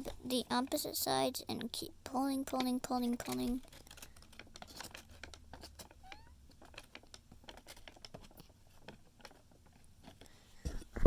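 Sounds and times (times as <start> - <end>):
paper crinkling: 2.5 - 10.3.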